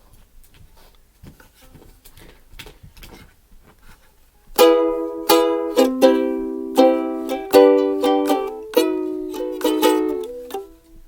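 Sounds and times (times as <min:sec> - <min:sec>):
stringed instrument strummed: 0:04.6 - 0:11.0.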